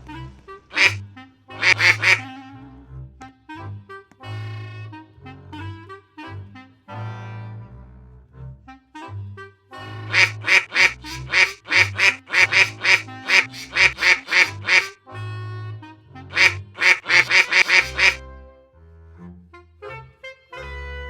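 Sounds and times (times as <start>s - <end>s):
harsh quack-like calls: 0.7s - 1.0s, 1.6s - 2.2s, 10.1s - 15.0s, 16.3s - 18.2s
music with bass line: 1.6s - 2.2s, 10.1s - 15.0s, 16.3s - 18.2s.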